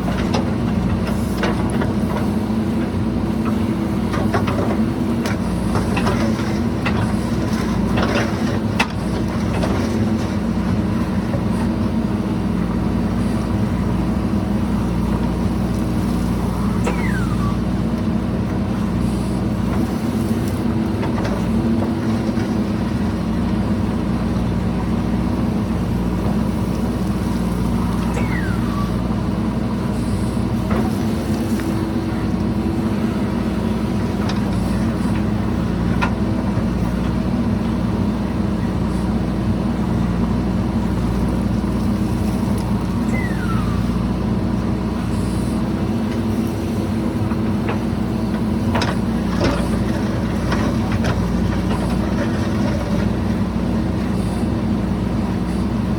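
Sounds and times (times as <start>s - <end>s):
diesel engine running: 0.0s - 55.9s
short falling squeaks: 16.3s - 17.8s, 27.7s - 29.2s, 42.8s - 44.2s.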